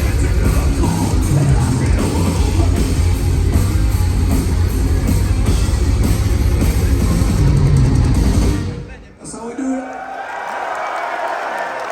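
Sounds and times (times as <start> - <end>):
heavy bass: 0.0 - 8.9
distorted electric guitars: 0.0 - 9.0
drums: 0.0 - 9.2.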